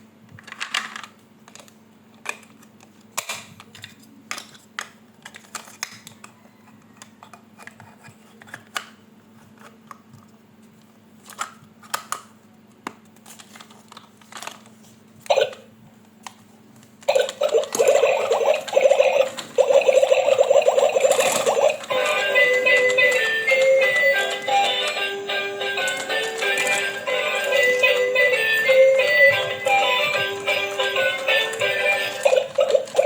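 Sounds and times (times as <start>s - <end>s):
music: 21.4s - 33.0s.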